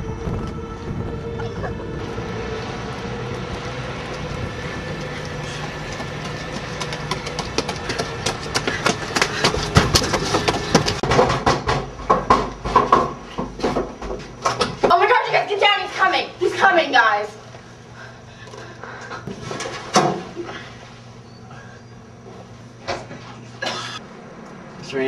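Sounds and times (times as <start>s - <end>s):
train rumbling by: 0.0s - 11.0s
train clacks and knocks: 3.2s - 13.1s.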